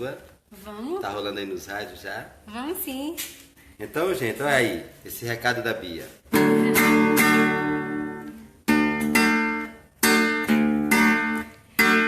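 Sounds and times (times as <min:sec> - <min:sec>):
acoustic guitar strumming chords: 0:06.3 - 0:12.0.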